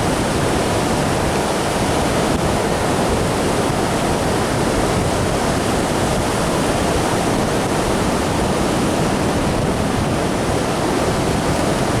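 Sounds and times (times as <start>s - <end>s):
surf rushing on beach: 0.0s - 12.0s.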